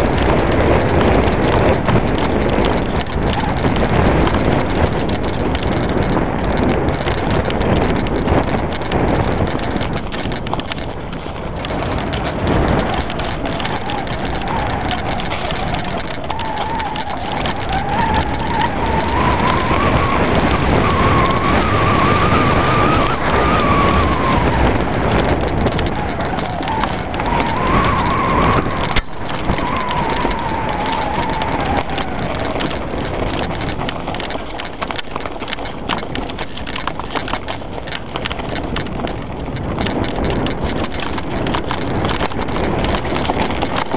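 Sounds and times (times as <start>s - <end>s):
wind and rattling: 0.0s - 43.9s
thin engine whine: 11.2s - 34.0s.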